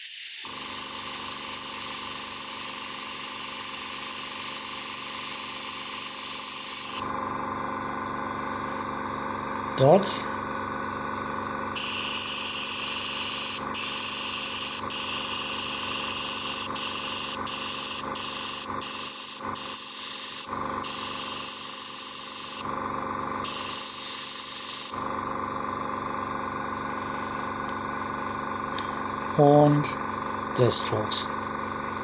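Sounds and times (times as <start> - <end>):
airbrush hissing: 0.0 - 7.1, 11.8 - 22.7, 23.4 - 25.0
compressor pulsing hum: 0.4 - 32.0.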